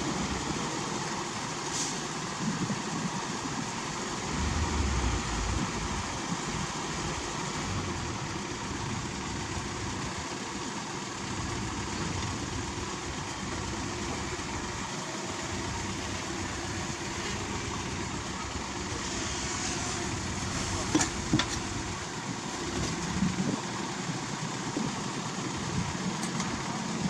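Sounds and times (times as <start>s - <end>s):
heavy diesel engine running: 0.0s - 27.0s.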